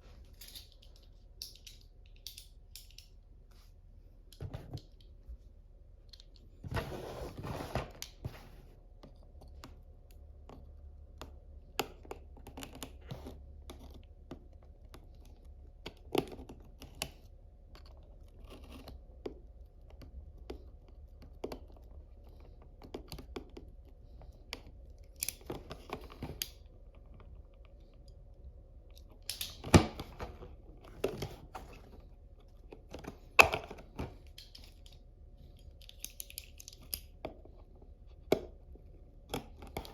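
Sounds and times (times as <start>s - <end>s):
plastic parts clicking: 0.4s - 3.1s, 35.6s - 37.3s.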